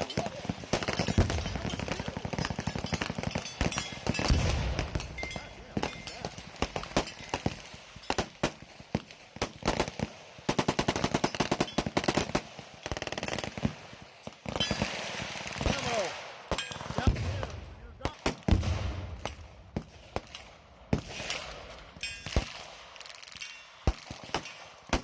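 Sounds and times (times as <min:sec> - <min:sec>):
single gunshots: 0:03.4 - 0:07.5, 0:15.6 - 0:21.6.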